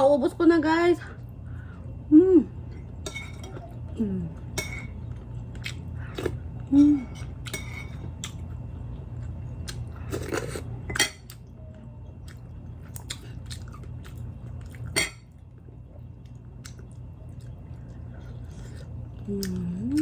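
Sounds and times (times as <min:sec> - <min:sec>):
steady low hum: 0:00.0 - 0:20.0
chewing and crunching food: 0:02.8 - 0:20.0.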